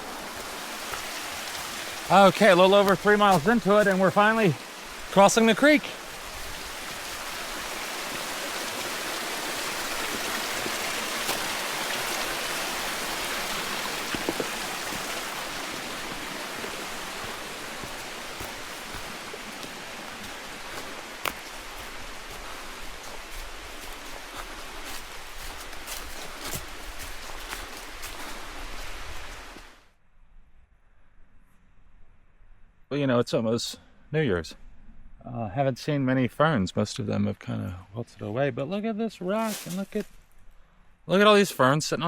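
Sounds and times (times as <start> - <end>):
water rushing over rocks: 0.0 - 29.8.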